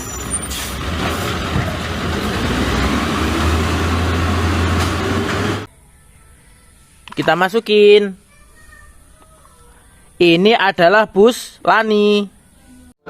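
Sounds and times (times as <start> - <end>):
garbage truck engine rumbling: 0.0 - 5.7.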